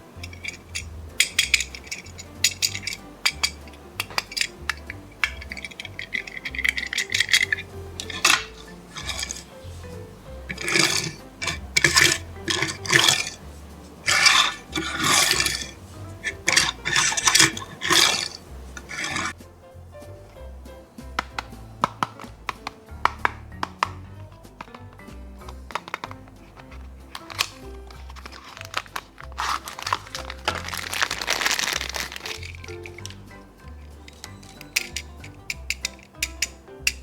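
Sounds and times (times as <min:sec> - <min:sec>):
soft background music: 0:00.0 - 0:37.0
plastic packaging clicks and taps: 0:21.0 - 0:33.3
packaging crinkling and rustling: 0:25.5 - 0:33.2.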